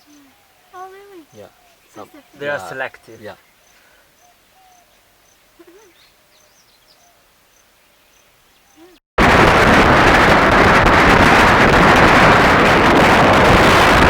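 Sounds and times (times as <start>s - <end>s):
faint calls: 0.0s - 7.3s
wind rushing on microphone: 9.2s - 14.0s.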